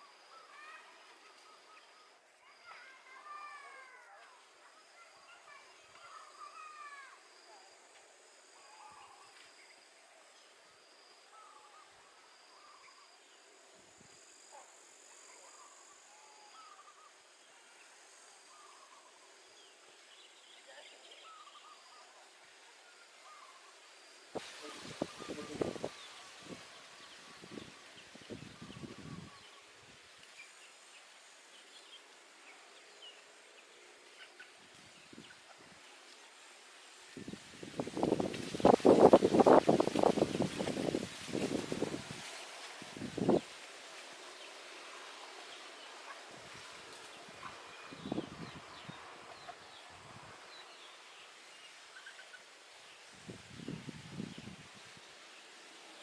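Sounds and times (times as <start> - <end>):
steady hiss: 0.0 - 56.0
wind buffeting microphone: 24.4 - 29.5, 37.1 - 43.5, 47.3 - 50.5, 53.2 - 55.1.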